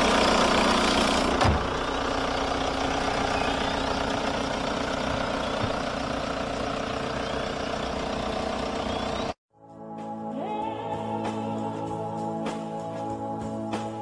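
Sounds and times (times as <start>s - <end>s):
diesel engine idling: 0.0s - 9.4s.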